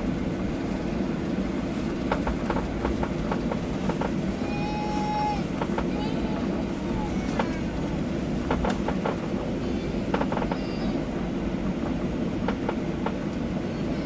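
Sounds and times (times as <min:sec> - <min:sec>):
aircraft cabin low hum: 0:00.0 - 0:14.0
wheels knocking over bumps: 0:02.0 - 0:09.5.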